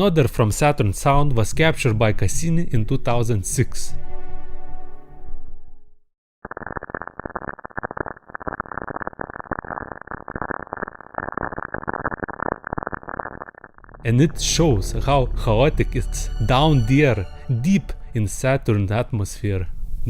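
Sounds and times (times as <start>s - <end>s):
dense crackling static: 6.4s - 15.8s
tone: 11.6s - 19.2s.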